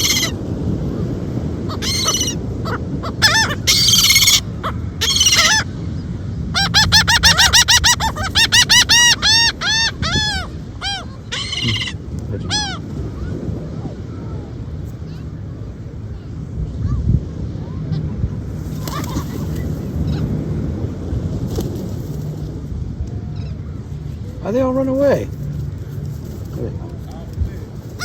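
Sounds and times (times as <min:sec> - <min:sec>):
gulls calling: 0:00.0 - 0:20.9.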